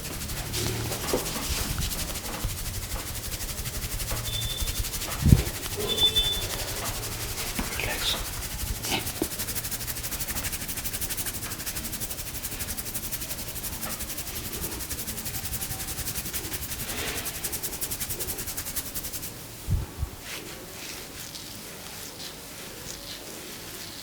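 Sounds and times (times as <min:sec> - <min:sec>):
low thumps: 0:00.0 - 0:10.4
hands rubbing hair: 0:00.0 - 0:24.0.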